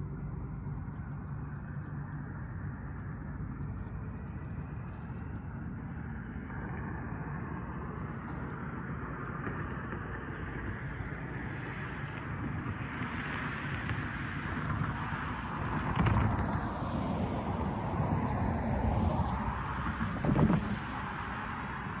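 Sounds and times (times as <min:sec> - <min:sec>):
road traffic passing: 0:05.5 - 0:22.0.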